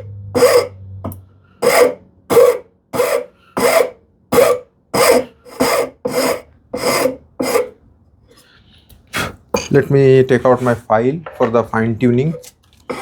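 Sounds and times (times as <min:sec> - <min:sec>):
hand rasp on wood: 0:00.4 - 0:00.7, 0:01.6 - 0:07.8.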